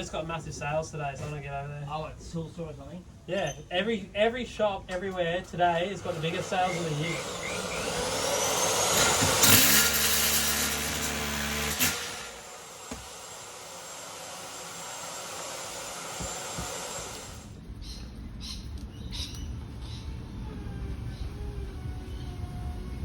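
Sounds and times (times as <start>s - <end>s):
electric machine hissing: 6.0s - 17.5s
motor whine: 6.0s - 17.6s, 20.0s - 23.0s.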